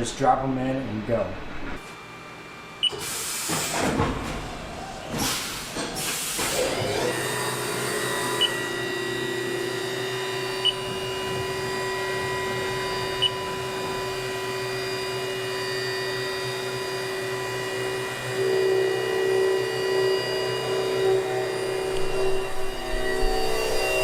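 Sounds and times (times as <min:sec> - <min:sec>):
milling machine spindle whine: 0:06.2 - 0:24.0.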